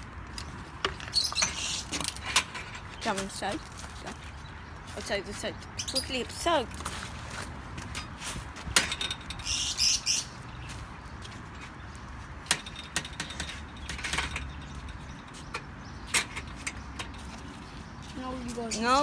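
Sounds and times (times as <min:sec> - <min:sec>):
small birds chirping: 0:00.1 - 0:19.0.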